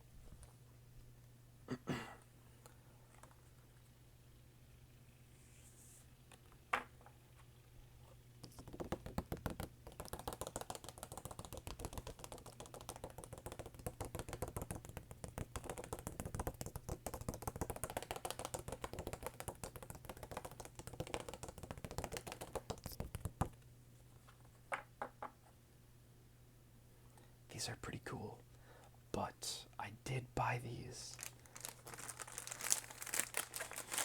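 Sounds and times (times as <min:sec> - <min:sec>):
fingernails tapping on cards: 0:08.4 - 0:23.6.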